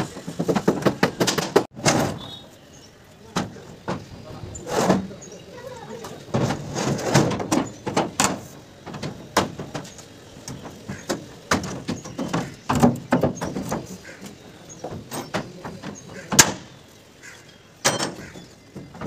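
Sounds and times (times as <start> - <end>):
formwork knocking and clattering: 0.0 - 2.2, 6.3 - 14.0.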